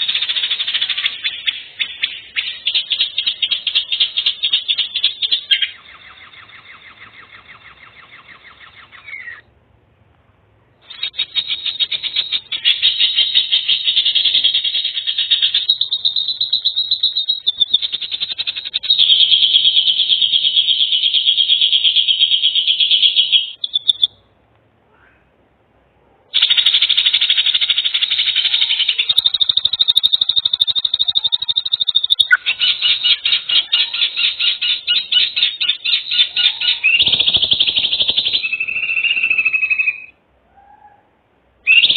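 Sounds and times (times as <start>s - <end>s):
animal buzzy trilling calls: 10.9s - 24.1s, 26.4s - 40.1s.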